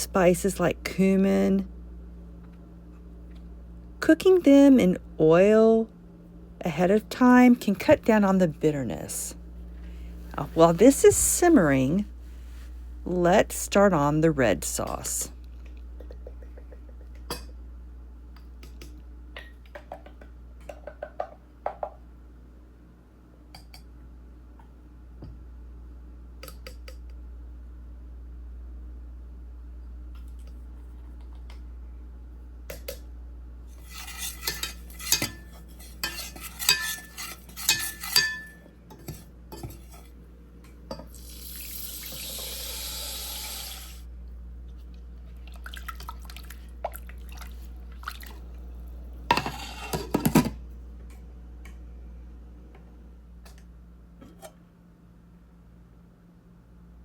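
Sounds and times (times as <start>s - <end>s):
low steady hum: 0.0s - 57.0s
dishes and utensils clattering: 33.9s - 40.0s, 49.3s - 50.5s
running water: 45.3s - 48.5s.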